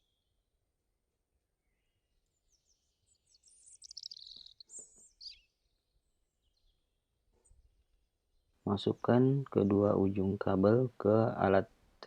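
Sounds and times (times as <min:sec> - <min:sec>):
faint bird chirping: 0:00.0 - 0:00.4, 0:01.6 - 0:10.8.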